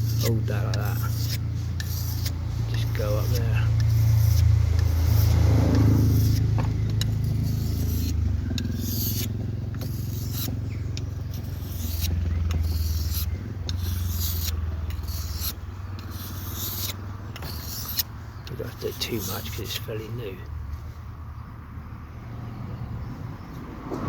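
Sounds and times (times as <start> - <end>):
steady low rumble: 0.0 - 18.8
knife scraping sharpening stone: 0.0 - 19.9.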